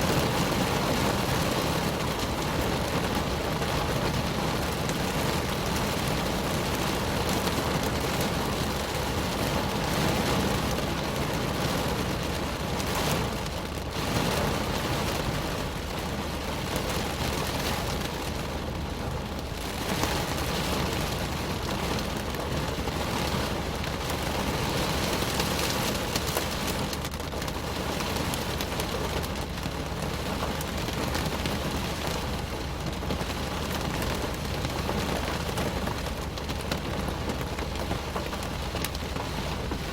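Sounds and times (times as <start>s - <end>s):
rain drumming on car roof: 0.0s - 39.9s.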